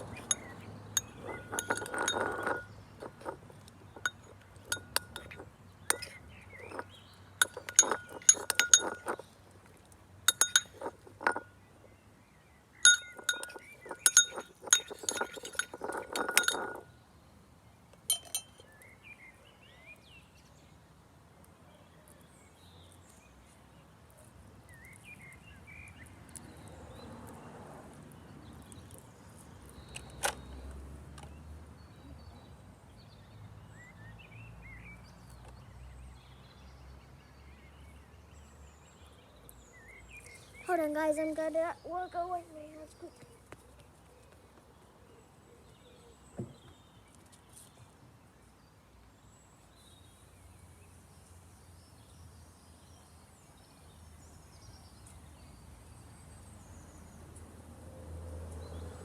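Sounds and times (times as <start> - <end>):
utensil clinking against glass: 0.0 - 9.3, 10.3 - 11.5, 12.8 - 16.9, 18.1 - 18.7.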